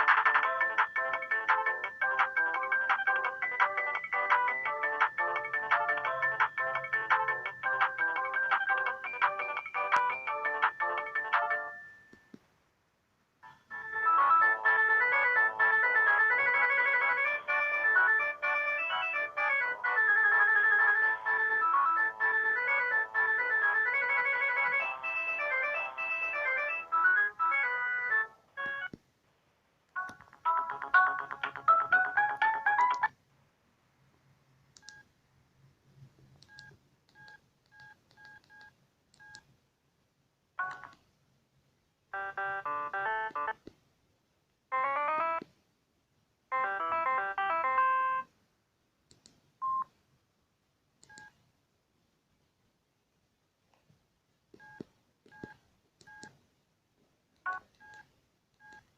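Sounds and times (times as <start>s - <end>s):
phone ringtone melodies: 0.0s - 12.2s, 13.4s - 28.9s, 30.0s - 33.1s, 42.2s - 43.6s, 44.7s - 45.4s, 46.5s - 48.3s.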